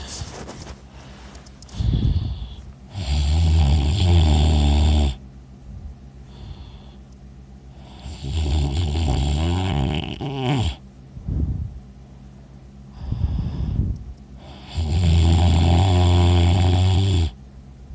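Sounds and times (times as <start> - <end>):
quiet breathing: 0.0 - 3.0, 6.2 - 8.2, 12.8 - 14.9
person snoring loudly: 1.8 - 5.2, 7.8 - 10.8, 14.4 - 17.4.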